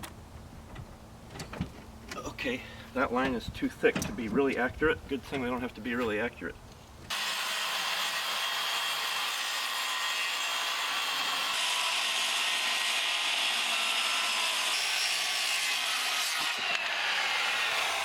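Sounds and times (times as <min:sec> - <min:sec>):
power saw cutting wood: 0:07.1 - 0:18.0.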